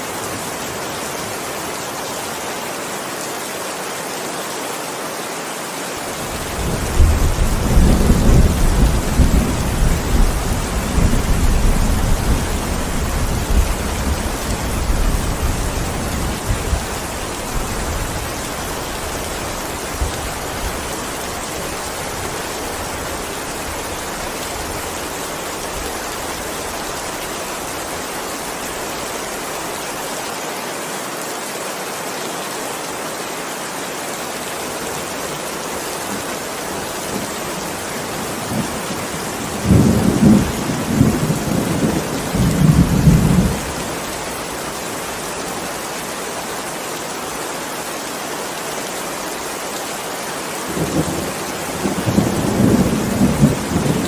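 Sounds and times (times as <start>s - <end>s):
heavy rain hissing: 0.0s - 54.0s.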